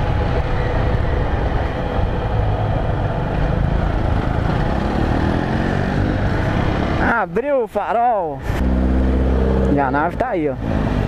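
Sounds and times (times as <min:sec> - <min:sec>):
wind noise on microphone: 0:00.0 - 0:04.8
motorcycle engine: 0:00.0 - 0:07.1, 0:08.4 - 0:11.0
traffic noise: 0:00.0 - 0:11.0.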